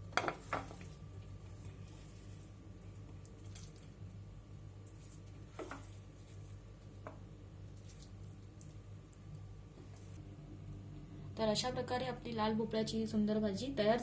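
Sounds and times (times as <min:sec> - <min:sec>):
steady low hum: 0:00.0 - 0:14.0
spoon scraping food in a pan: 0:04.9 - 0:06.5.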